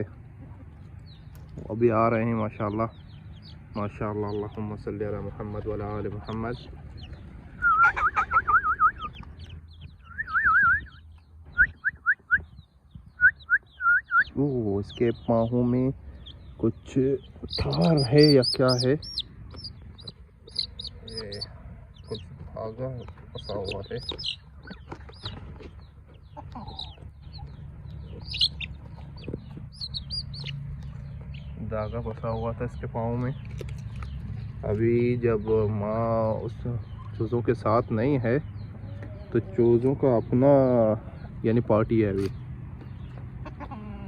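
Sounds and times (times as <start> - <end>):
chicks peeping: 0.0 - 44.0
person whistling: 10.1 - 10.9.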